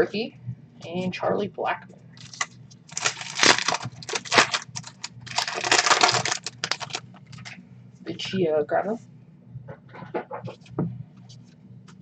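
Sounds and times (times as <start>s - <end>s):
cards rustling: 2.2s - 7.0s.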